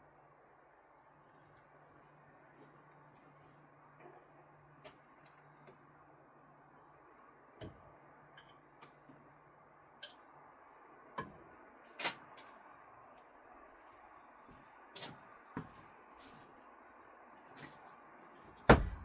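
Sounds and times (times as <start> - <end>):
steady low hum: 18.6 - 19.0.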